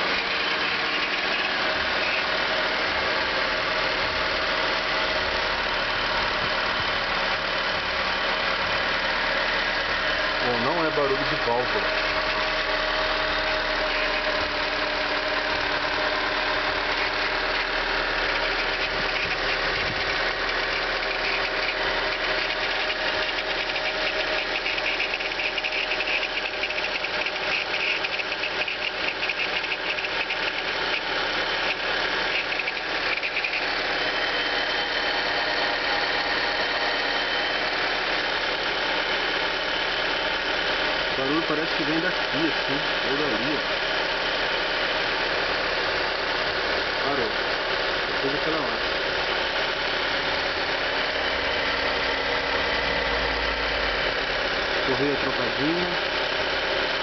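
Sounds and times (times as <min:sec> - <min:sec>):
fast metallic rattle: 0:00.0 - 0:02.3, 0:16.8 - 0:34.3
car engine running: 0:00.0 - 0:57.0.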